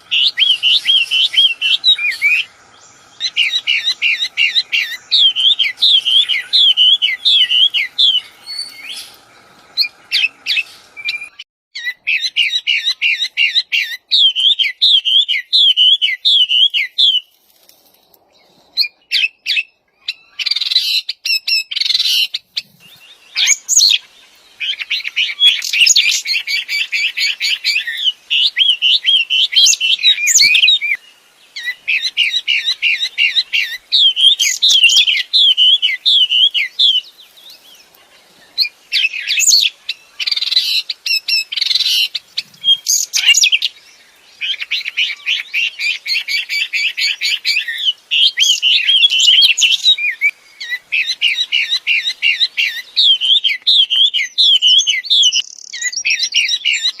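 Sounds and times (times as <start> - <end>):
songbird singing high chirps: 0.0 - 17.4, 18.3 - 57.0.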